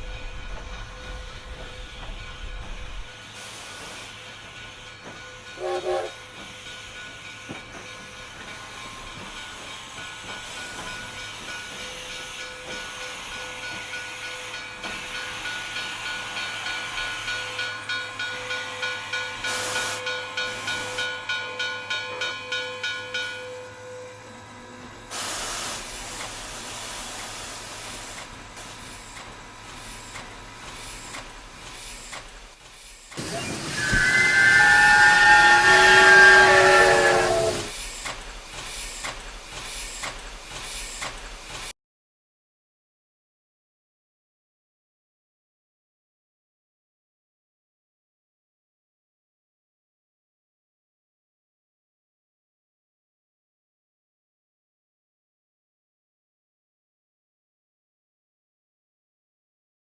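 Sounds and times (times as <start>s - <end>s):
steam hissing: 0.0s - 17.5s, 19.4s - 21.0s, 25.1s - 41.7s
steam train chuffing: 0.0s - 41.7s
steam train whistle chord: 5.5s - 6.2s, 33.2s - 37.7s
whistle falling in pitch: 33.3s - 37.7s.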